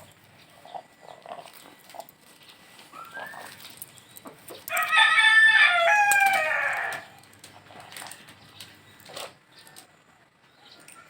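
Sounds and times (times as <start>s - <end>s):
rooster crowing: 4.7s - 7.1s.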